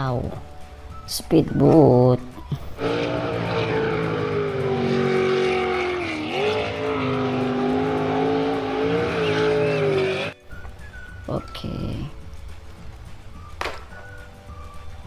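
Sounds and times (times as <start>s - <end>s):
engine running: 2.8s - 10.4s.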